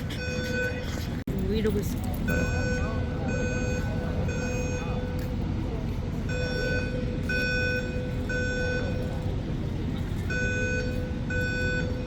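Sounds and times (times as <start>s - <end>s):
fire alarm beeps: 0.1s - 0.9s, 2.3s - 5.2s, 6.2s - 9.2s, 10.2s - 12.0s.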